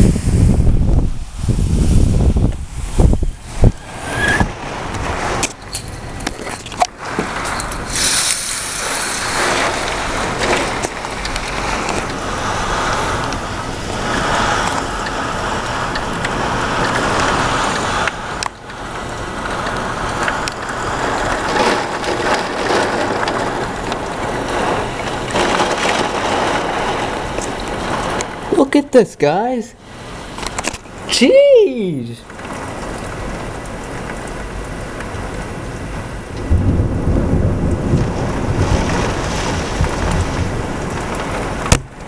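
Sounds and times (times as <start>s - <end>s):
gusting wind: 0.0s - 42.0s
heavy rain beating on house: 0.0s - 42.0s.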